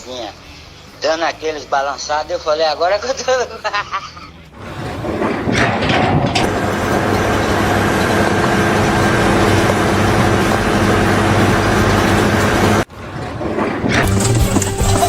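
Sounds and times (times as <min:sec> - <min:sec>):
mechanical drone: 0:04.6 - 0:14.7.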